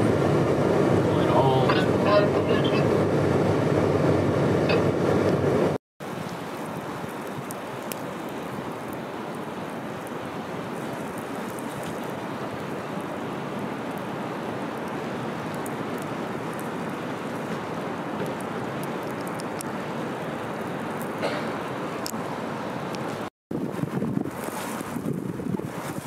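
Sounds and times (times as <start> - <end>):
blizzard wind blowing: 0.0 - 26.0
vehicle road noise rumble: 0.0 - 26.0
snow ticking: 6.0 - 22.2.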